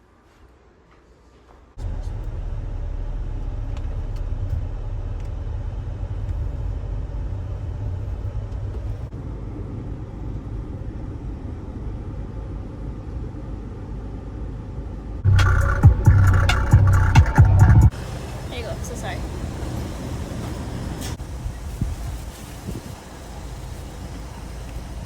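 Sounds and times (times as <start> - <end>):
car road and engine noise: 1.7 - 25.0.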